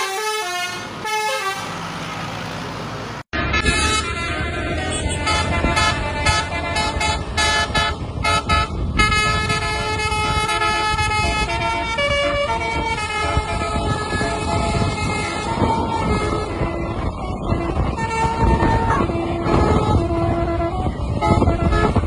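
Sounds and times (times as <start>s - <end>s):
multi-tone bus horn playing a tune: 0.0s - 1.8s, 3.4s - 22.0s.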